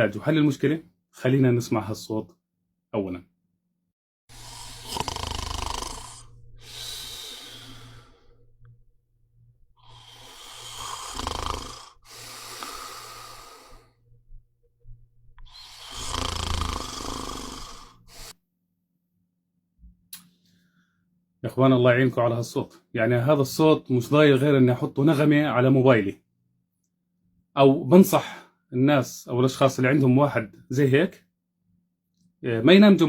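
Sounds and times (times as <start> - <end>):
person snoring heavily: 4.3 - 8.4, 9.8 - 14.0, 15.4 - 18.4.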